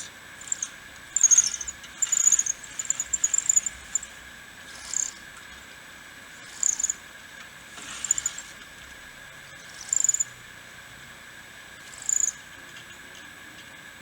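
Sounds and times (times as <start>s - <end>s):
pulley blocks squeaking: 0.0s - 4.1s, 7.8s - 8.6s.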